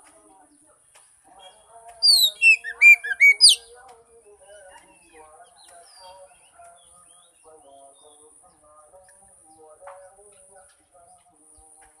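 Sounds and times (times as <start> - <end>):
bird whistled song: 2.0 - 3.7.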